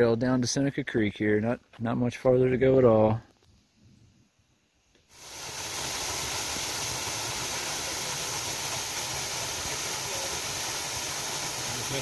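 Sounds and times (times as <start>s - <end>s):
waterfall rushing: 5.2s - 12.0s.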